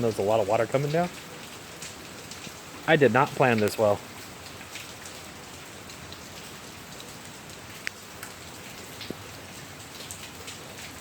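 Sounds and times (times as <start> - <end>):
hailstones ticking: 0.0 - 11.0
rain and hail hissing: 0.0 - 11.0.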